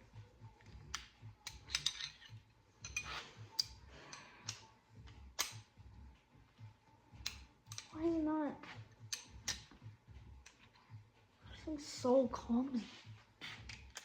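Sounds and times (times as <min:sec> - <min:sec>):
metal tools clicking and rattling: 0:00.9 - 0:05.7, 0:07.2 - 0:08.0, 0:08.9 - 0:09.8, 0:13.6 - 0:14.0.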